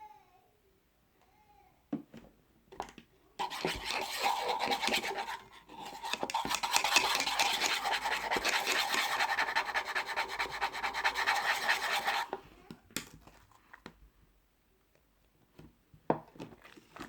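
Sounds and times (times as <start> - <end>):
rapid scratchy rubbing: 3.4 - 12.3.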